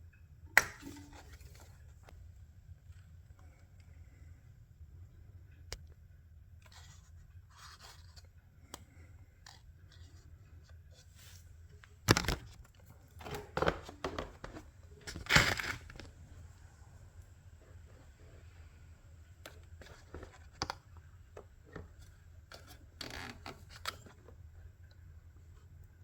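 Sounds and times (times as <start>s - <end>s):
parts and tools handling: 6.6s - 16.2s.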